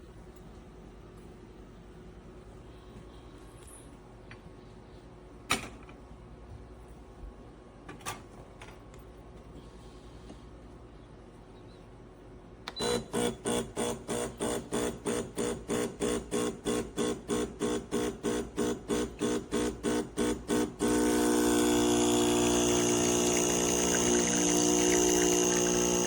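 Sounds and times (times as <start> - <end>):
espresso pump pulsing: 12.8 - 26.0.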